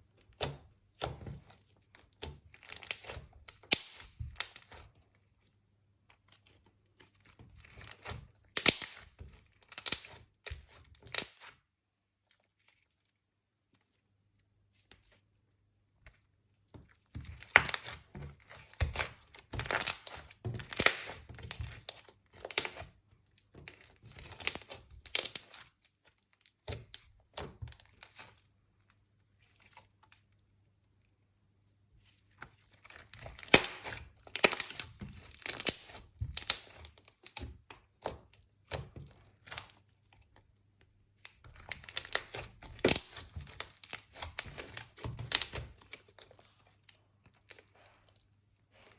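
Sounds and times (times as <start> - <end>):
slime clicking and popping: 2.6 - 4.8, 8.0 - 9.1, 9.7 - 10.2, 18.8 - 22.8, 33.3 - 36.8, 41.6 - 45.6.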